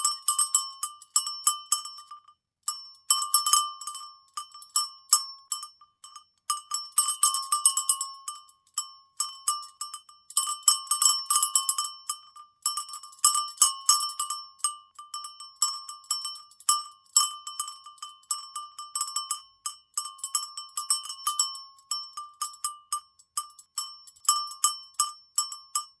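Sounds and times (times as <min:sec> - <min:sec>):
cowbell clanking: 0:00.0 - 0:08.2, 0:08.8 - 0:26.0.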